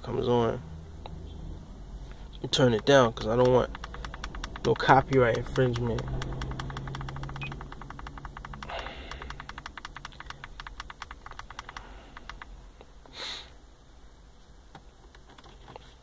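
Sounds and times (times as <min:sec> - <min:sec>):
low steady hum: 0:00.0 - 0:16.0
volume knob clicking: 0:02.8 - 0:12.5.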